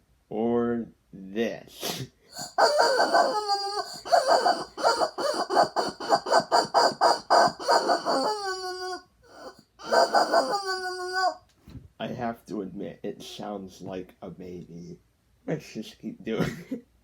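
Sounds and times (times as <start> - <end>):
rubber chicken squawking: 1.8 - 11.4.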